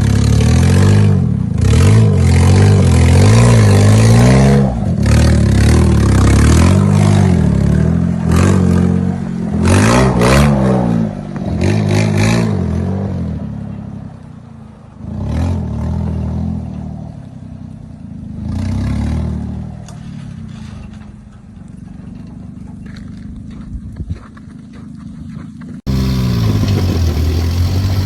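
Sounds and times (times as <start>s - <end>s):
small truck engine revving: 0.0s - 13.2s, 25.9s - 28.0s.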